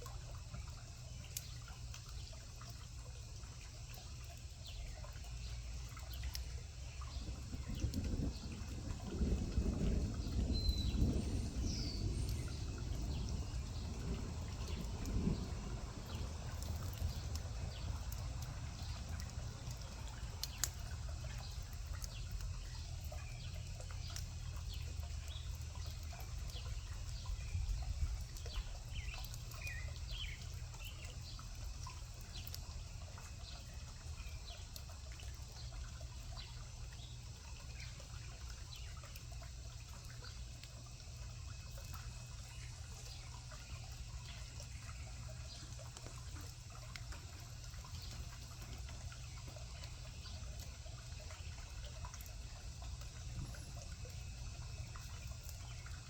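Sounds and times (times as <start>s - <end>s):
water dripping and trickling: 0.0s - 56.0s
bird chirps: 10.5s - 12.7s.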